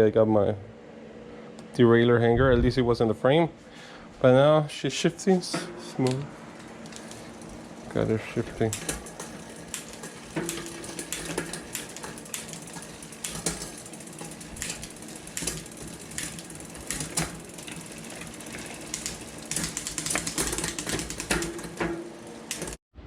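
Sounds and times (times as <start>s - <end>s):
bike chain whirring: 5.4s - 22.8s
derailleur and hub clicking: 5.6s - 22.8s.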